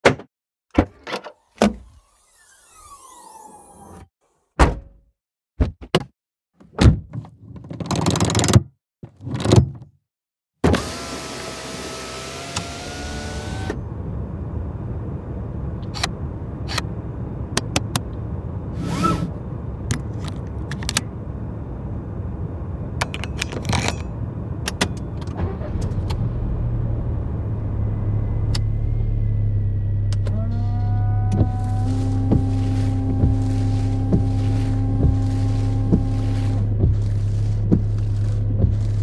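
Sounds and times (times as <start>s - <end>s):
electric window motor whining: 1.4s - 4.0s, 10.7s - 13.8s, 18.8s - 19.4s, 25.7s - 39.0s
low steady rumble: 13.8s - 39.0s
car mechanism clicks and knocks: 17.6s - 18.1s, 23.0s - 26.2s, 30.2s - 39.0s.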